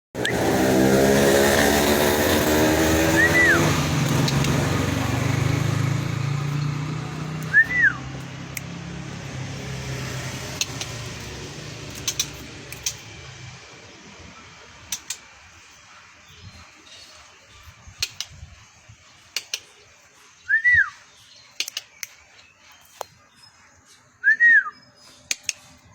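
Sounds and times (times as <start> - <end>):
vehicle engine running: 0.2 - 16.2
bird whistling: 3.0 - 4.5, 7.4 - 8.2, 20.4 - 21.1, 24.2 - 25.2
sharp clicks: 3.2 - 13.5, 14.8 - 15.4, 17.9 - 18.4, 19.3 - 19.8, 21.5 - 22.2, 25.3 - 25.8.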